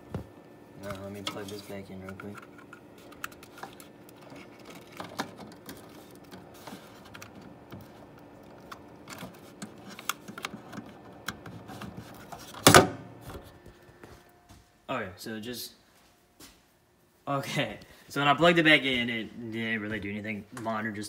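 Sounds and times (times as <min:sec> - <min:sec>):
faint steady hum: 0:00.0 - 0:21.0
clicks of handling computer parts: 0:00.8 - 0:13.4.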